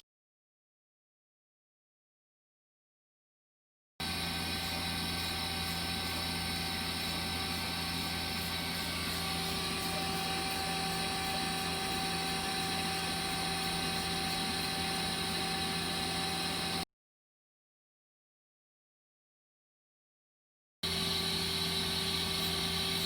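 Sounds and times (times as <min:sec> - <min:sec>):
lathe machine hum: 0:04.0 - 0:16.8, 0:20.8 - 0:23.0.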